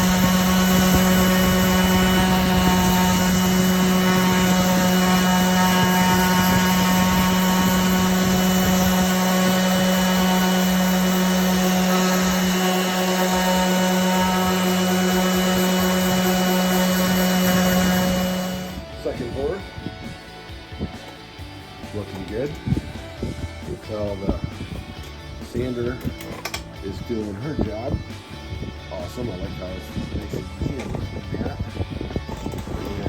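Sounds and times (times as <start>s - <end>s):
orbital sander on wood: 0.0s - 19.1s.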